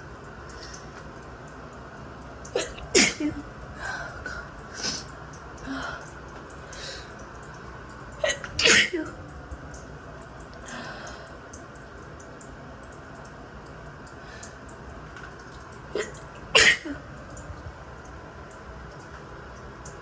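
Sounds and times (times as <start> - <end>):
shower running: 0.0 - 20.0
woman sneezing: 2.6 - 3.4, 8.2 - 9.1, 16.0 - 17.0.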